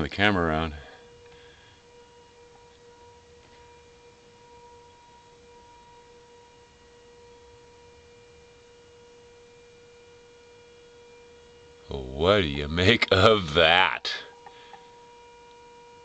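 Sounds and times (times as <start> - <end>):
higher tone: 11.9 - 14.3.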